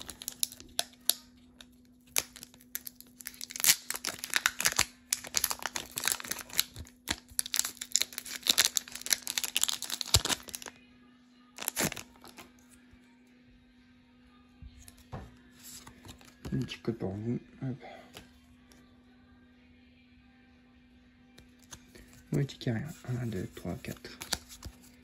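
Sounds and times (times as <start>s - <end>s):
foil wrapper tearing and crinkling: 0.0s - 10.7s, 11.6s - 12.5s, 23.8s - 25.0s.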